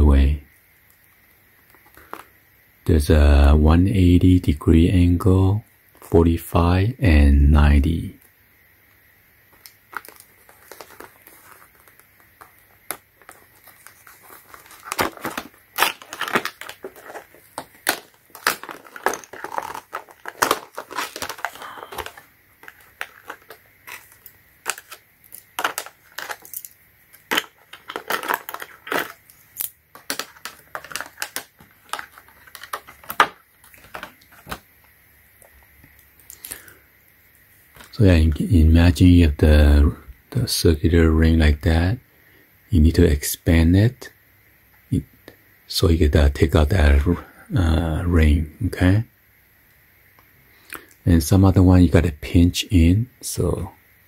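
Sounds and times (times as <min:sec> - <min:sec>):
plastic packaging crinkling: 0:01.6 - 0:02.3, 0:09.5 - 0:36.7, 0:37.7 - 0:38.0.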